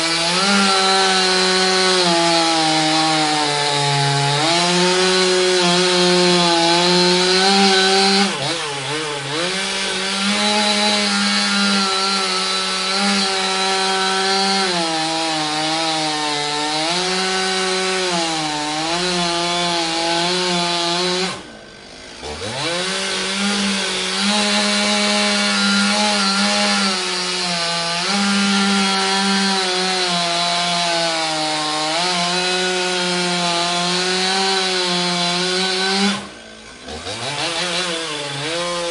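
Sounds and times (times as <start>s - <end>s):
chainsaw sawing: 0.0s - 38.9s.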